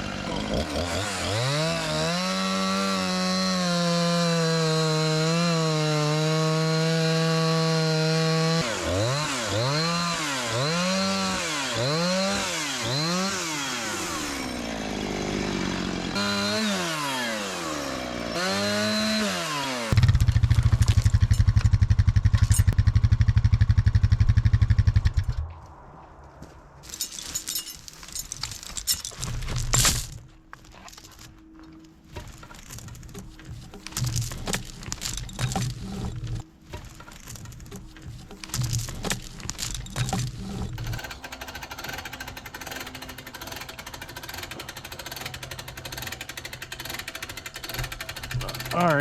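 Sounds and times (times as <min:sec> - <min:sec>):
chainsaw cutting and revving: 0:00.0 - 0:22.7, 0:38.6 - 0:49.0.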